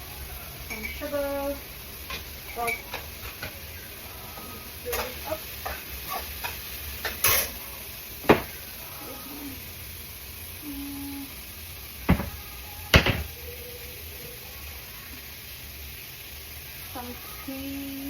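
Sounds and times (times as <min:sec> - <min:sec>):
onions frying in oil: 0:00.0 - 0:18.0
utensils knocking on cookware: 0:02.0 - 0:03.6, 0:04.9 - 0:07.6, 0:08.2 - 0:08.6, 0:12.1 - 0:13.3.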